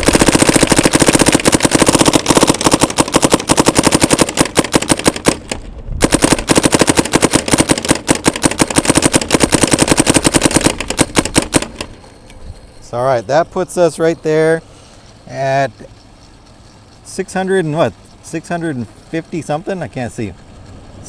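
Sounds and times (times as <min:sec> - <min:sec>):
paintball gun firing rapidly: 0:00.0 - 0:12.0.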